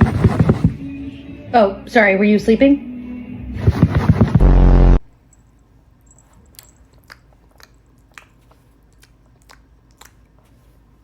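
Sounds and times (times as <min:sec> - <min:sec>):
crunchy chewing: 0:06.4 - 0:11.0.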